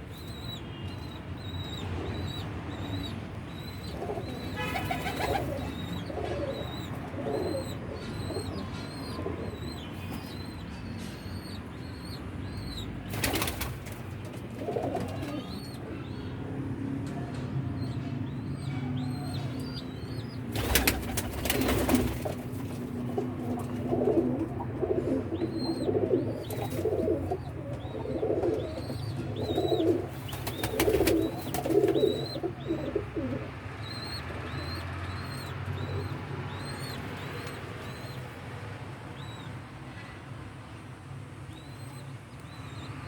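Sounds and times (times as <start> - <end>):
pigeons cooing: 2.2 - 10.6, 12.6 - 16.2, 18.7 - 38.2
wing-flaps: 20.6 - 22.7, 30.3 - 32.1.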